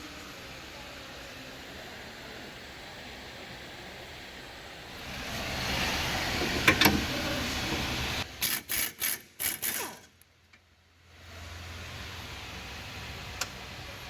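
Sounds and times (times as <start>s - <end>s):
pneumatic tool bursts: 8.4s - 10.1s.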